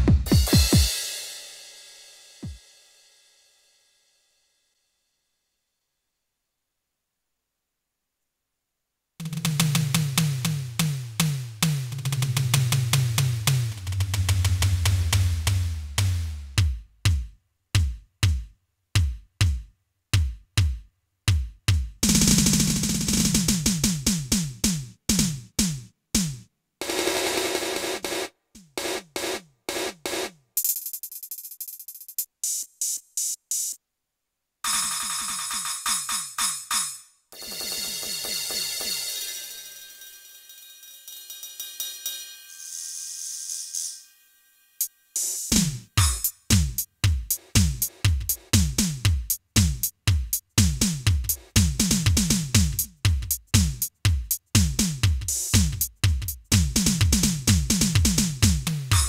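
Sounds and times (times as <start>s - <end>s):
electronic drum hits: 0.0s - 1.0s
fast drum roll: 0.0s - 2.6s, 9.2s - 16.8s, 22.0s - 25.4s, 26.8s - 30.4s, 45.5s - 59.0s
ringing cymbal: 36.8s - 46.4s.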